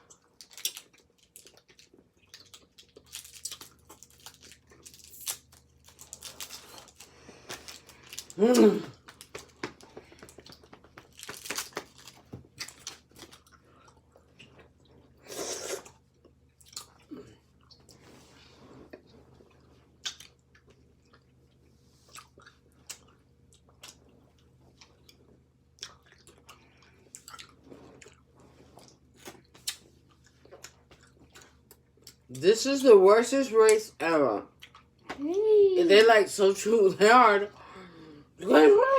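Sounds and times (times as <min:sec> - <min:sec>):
chewing candy mouth sounds: 0:00.0 - 0:18.0, 0:18.9 - 0:32.4, 0:34.5 - 0:35.1.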